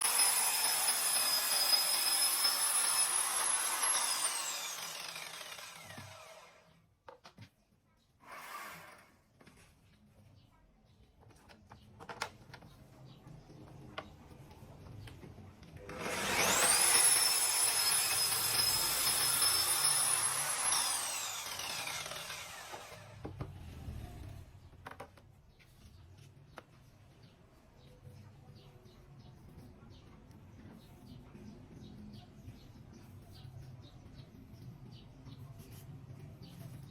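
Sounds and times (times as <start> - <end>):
electric saw whining: 0.0 - 6.7, 15.9 - 23.3.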